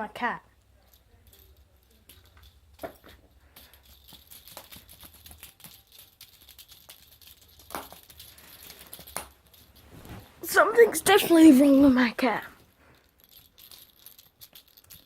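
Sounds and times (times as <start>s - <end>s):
faint rattling: 0.6s - 15.0s.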